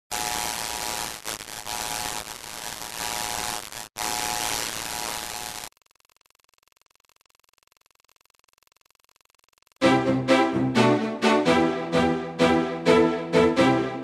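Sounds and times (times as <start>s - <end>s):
loud static hiss: 0.1s - 5.7s.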